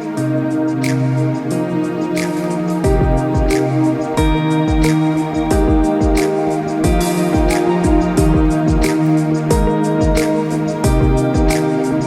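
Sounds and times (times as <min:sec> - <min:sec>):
sharp percussion hits: 0:00.0 - 0:12.0
sustained chords: 0:00.0 - 0:12.0
pulsing low drum: 0:02.5 - 0:11.8.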